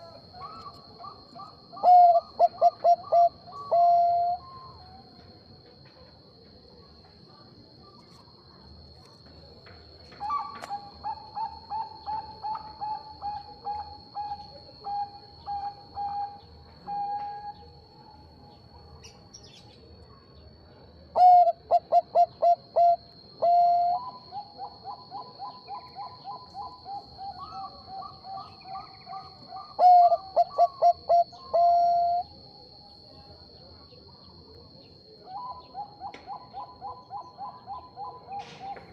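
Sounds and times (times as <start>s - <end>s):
dove cooing: 0.0s - 4.9s, 10.2s - 17.6s, 21.2s - 32.3s, 35.3s - 38.9s.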